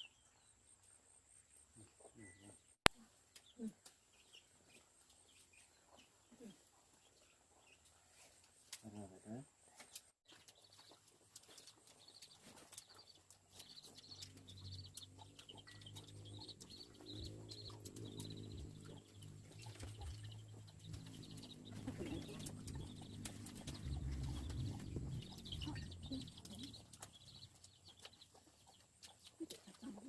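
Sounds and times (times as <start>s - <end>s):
birds chirping: 8.8s - 30.0s
low steady hum: 14.2s - 28.2s.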